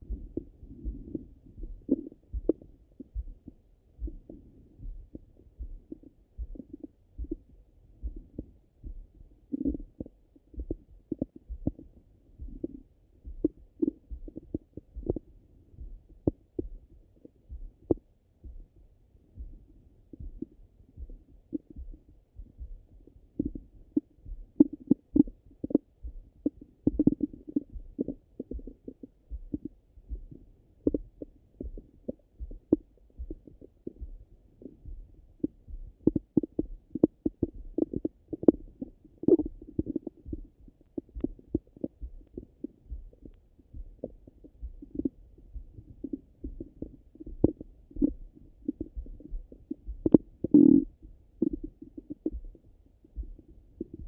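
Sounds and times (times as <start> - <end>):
stomach gurgling: 0.0 - 8.4, 9.4 - 15.3, 23.3 - 54.0.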